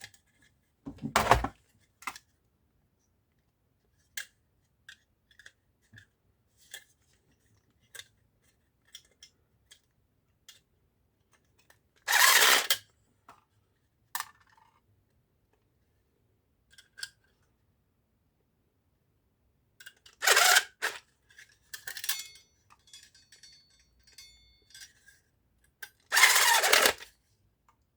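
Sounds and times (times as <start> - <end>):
screwdriver being handled: 0.9 - 1.5, 21.9 - 24.9.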